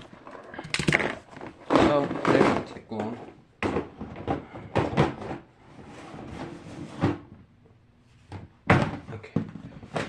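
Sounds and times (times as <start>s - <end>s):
plastic toys knocking and clattering: 0.0s - 5.5s, 8.3s - 10.0s.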